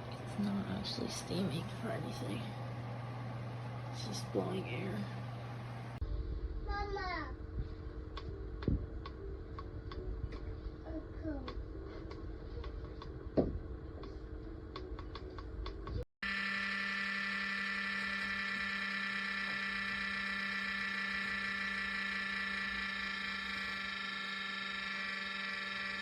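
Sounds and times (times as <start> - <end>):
low hum: 0.0 - 26.0
small electric motor whining: 16.2 - 26.0.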